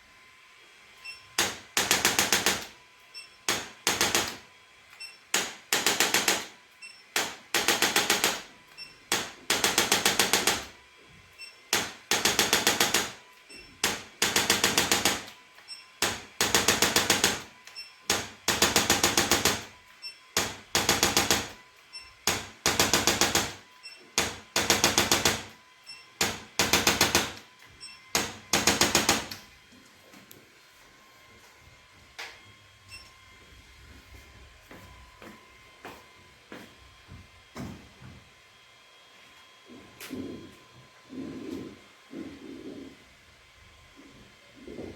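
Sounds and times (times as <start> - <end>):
rapid mechanical clicking: 1.4 - 2.7, 3.5 - 4.4, 5.3 - 6.5, 7.2 - 8.5, 9.1 - 10.7, 11.8 - 13.1, 13.8 - 15.3, 16.0 - 17.4, 18.1 - 19.6, 22.3 - 23.6, 24.2 - 25.5.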